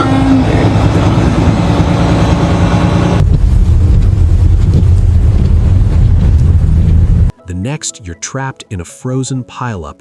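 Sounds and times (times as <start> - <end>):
vehicle engine rumbling: 0.0 - 7.3
wind noise: 0.0 - 7.3.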